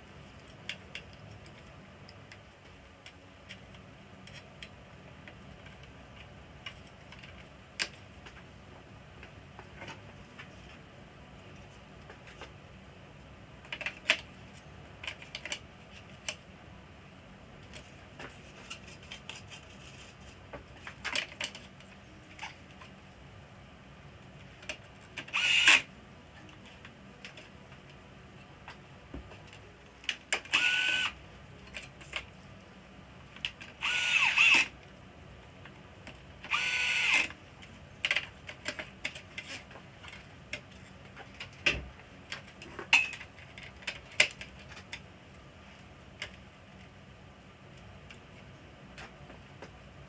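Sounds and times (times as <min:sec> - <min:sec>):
electric screwdriver whining: 0:25.3 - 0:25.9, 0:30.5 - 0:31.2, 0:33.8 - 0:34.7, 0:36.5 - 0:37.3.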